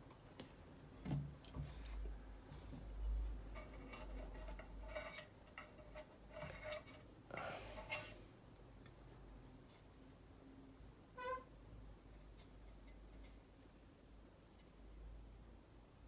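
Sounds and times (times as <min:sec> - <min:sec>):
light clicks and scrapes of parts: 0:00.0 - 0:10.3, 0:12.0 - 0:13.8, 0:14.4 - 0:15.1.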